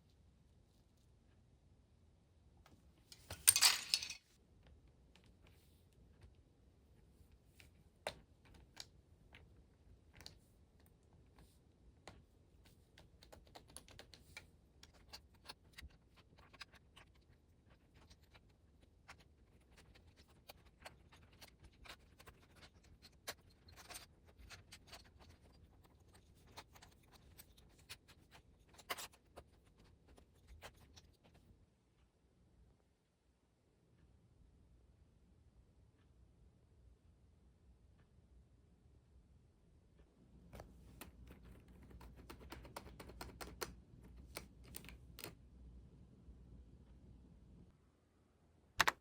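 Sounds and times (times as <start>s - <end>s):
keyboard typing: 40.6s - 45.4s.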